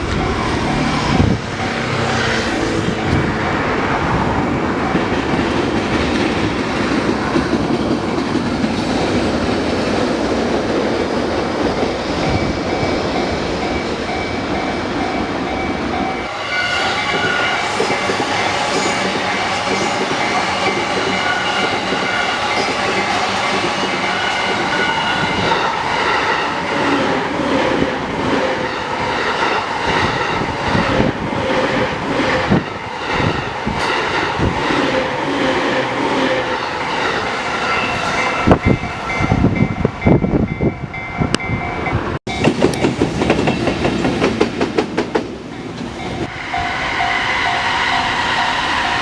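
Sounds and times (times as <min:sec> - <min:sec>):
crossing warning bell ringing: 0:00.0 - 0:06.2, 0:12.2 - 0:26.8, 0:32.0 - 0:44.4, 0:45.4 - 0:49.0
train wheels clacking over rail joints: 0:41.3 - 0:48.1.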